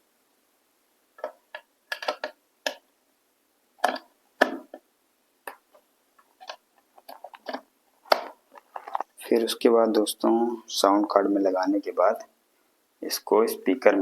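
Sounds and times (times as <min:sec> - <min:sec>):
jack cable clicks and knocks: 0:01.2 - 0:02.8, 0:03.8 - 0:04.8, 0:06.4 - 0:09.1.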